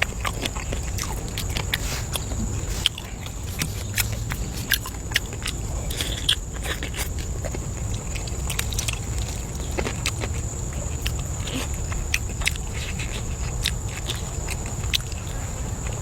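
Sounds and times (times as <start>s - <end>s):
person chewing: 0.0s - 16.0s.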